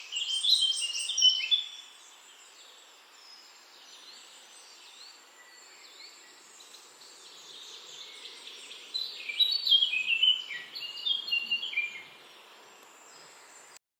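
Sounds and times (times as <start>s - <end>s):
background hiss: 0.0s - 13.8s
birds chirping: 0.0s - 13.8s.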